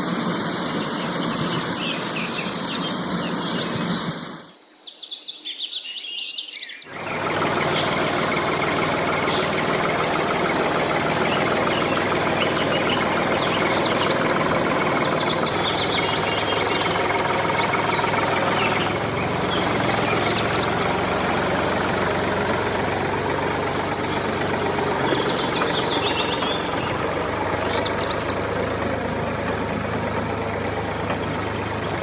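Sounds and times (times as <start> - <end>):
engine idling: 0.0 - 4.5, 6.9 - 32.0
short bird chirps: 0.3 - 6.9.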